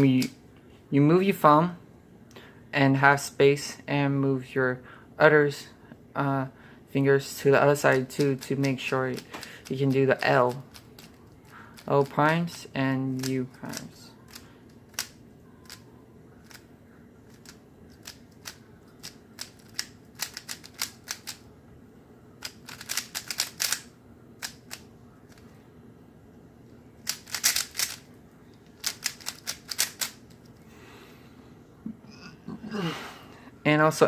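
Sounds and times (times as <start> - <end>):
puzzle cube layers clicking: 22.4 - 23.8, 27.1 - 28.0, 28.8 - 30.3.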